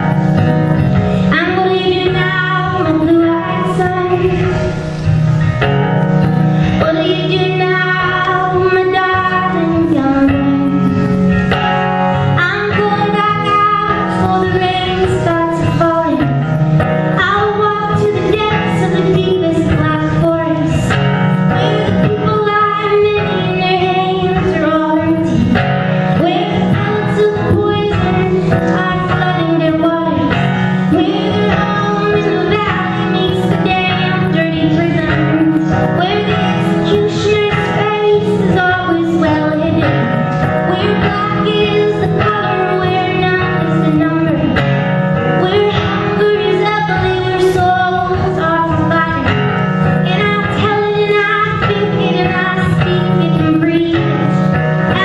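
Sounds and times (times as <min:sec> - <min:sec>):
acoustic guitar: 0:00.0 - 0:55.0
woman singing folk song: 0:06.7 - 0:11.1, 0:50.0 - 0:54.4.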